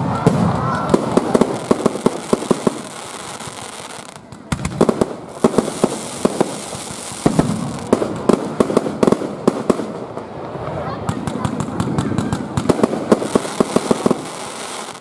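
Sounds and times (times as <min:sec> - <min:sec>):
fireworks bangs and pops: 0:00.0 - 0:15.0
fireworks hissing shower: 0:00.6 - 0:07.9, 0:13.0 - 0:15.0.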